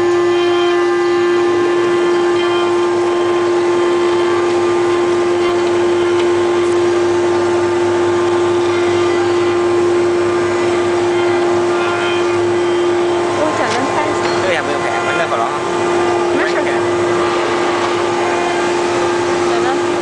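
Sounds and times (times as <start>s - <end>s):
machine humming: 0.0s - 20.0s.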